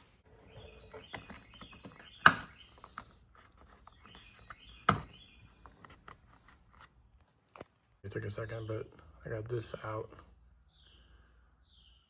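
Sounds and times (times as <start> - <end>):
plastic trim squeaking and creaking: 0.6 - 6.9
plastic clips snapping: 1.1 - 3.1.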